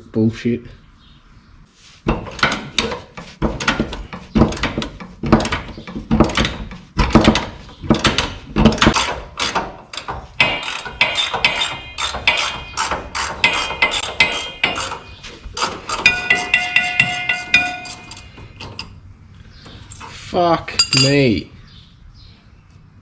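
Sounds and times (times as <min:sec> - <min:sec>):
metallic ringing: 0:10.4 - 0:15.2, 0:15.9 - 0:18.6, 0:20.7 - 0:21.4.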